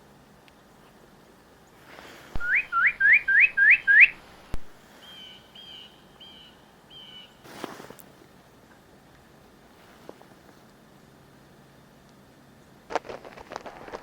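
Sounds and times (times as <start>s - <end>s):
songbird whistling notes: 2.4s - 4.2s, 5.0s - 7.4s.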